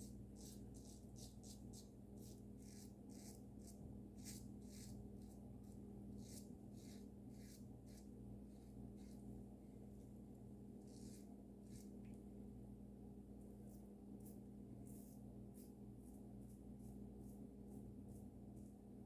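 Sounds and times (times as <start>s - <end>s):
razor scraping stubble: 0.4s - 9.3s, 10.8s - 12.1s.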